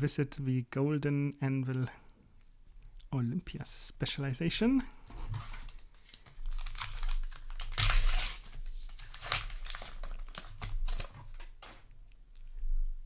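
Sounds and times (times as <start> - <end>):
foil wrapper crinkling and tearing: 5.3 - 11.9.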